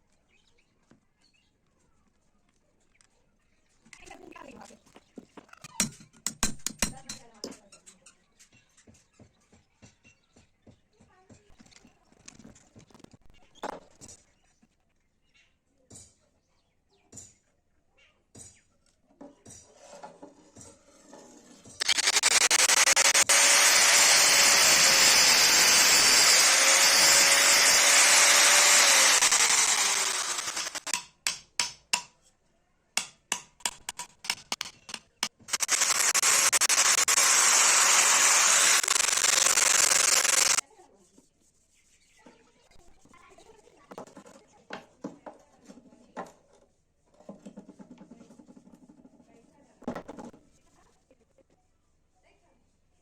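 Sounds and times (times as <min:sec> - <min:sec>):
power tool motor whine: 0:21.8 - 0:31.0, 0:33.7 - 0:40.6
sharp clicks and taps: 0:21.8 - 0:32.1, 0:33.0 - 0:40.6.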